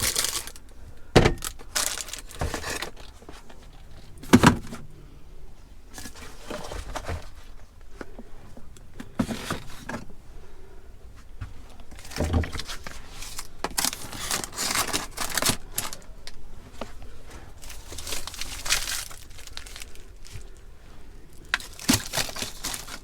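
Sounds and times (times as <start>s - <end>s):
plastic packaging crinkling: 0.0s - 0.7s, 1.4s - 4.1s, 11.9s - 16.4s, 17.6s - 20.6s, 21.3s - 23.0s
items set down knocking: 1.2s - 4.8s.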